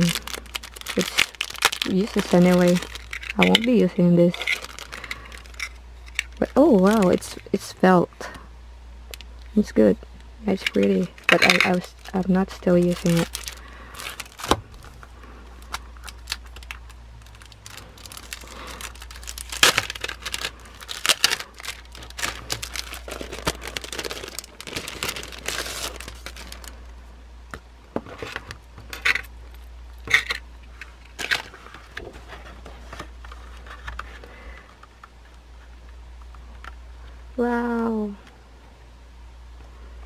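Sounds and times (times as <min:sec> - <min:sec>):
packaging crinkling and tearing: 0:00.0 - 0:07.4, 0:10.5 - 0:27.0, 0:28.2 - 0:34.3
items clicking and tapping: 0:00.0 - 0:07.5, 0:10.5 - 0:14.6
low steady hum: 0:00.0 - 0:40.0.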